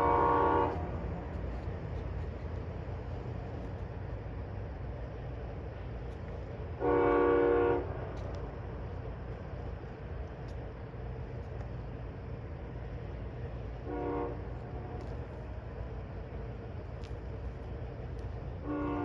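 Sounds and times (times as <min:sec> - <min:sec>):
locomotive air horn blast: 0:00.0 - 0:01.0, 0:06.8 - 0:07.9, 0:13.8 - 0:15.0, 0:18.6 - 0:19.0
low rumble of passing train: 0:00.0 - 0:19.0.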